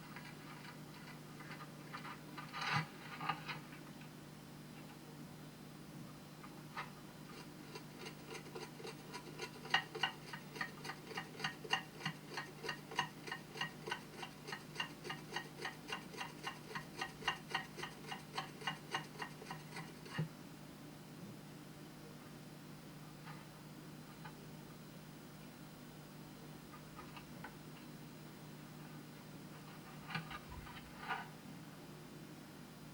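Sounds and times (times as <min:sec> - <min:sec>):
hedgehog scratching: 0:07.3 - 0:20.3.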